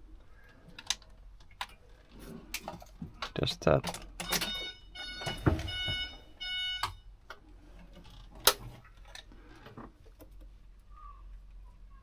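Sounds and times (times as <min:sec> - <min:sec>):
multi-tone electronic beeps: 0:04.2 - 0:07.0.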